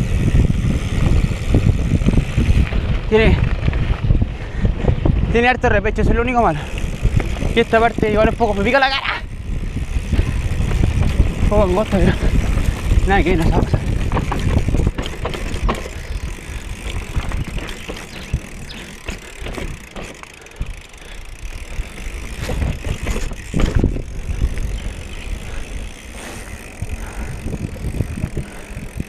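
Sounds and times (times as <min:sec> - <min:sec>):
bike rattling and knocking: 0:00.0 - 0:29.0
wind on microphone: 0:00.0 - 0:29.0
tyres rolling over dirt: 0:06.7 - 0:29.0.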